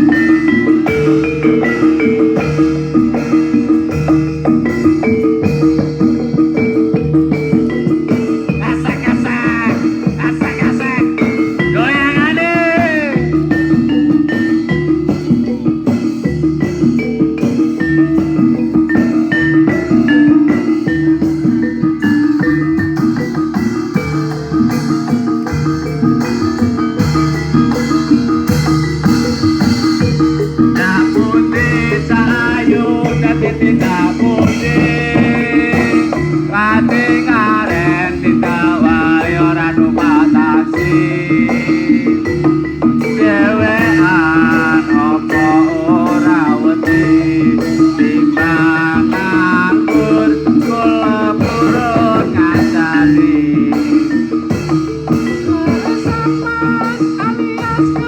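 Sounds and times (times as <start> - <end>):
drums: 0.0 - 58.0
metallophone melody: 0.0 - 58.0
person singing: 8.2 - 13.8, 30.7 - 58.0.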